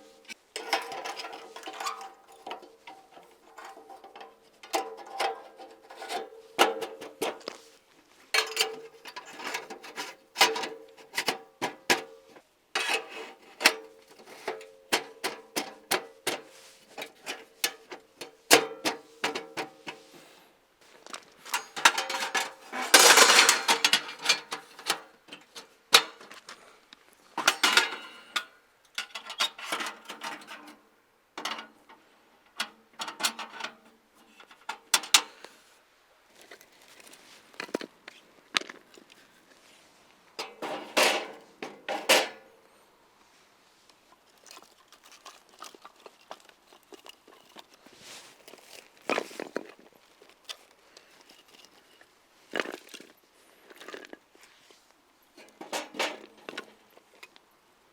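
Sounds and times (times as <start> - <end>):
rustling: 35.3 - 42.2, 43.2 - 57.5.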